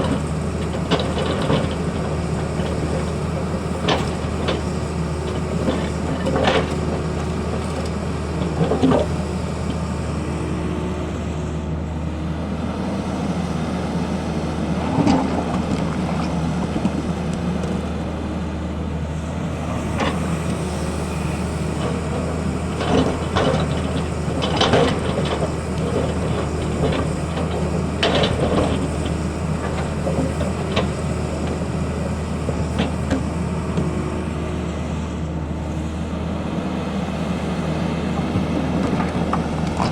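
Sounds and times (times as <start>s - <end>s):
excavator diesel engine running: 0.0s - 39.9s
machine clanks and knocks: 22.8s - 31.1s.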